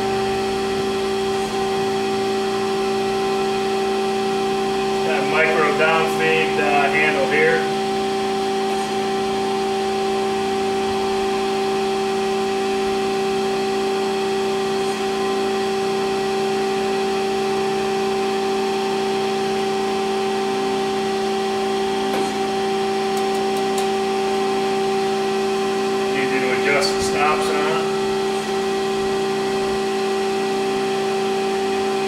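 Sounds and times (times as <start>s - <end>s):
surface grinder humming: 21.8s - 24.8s.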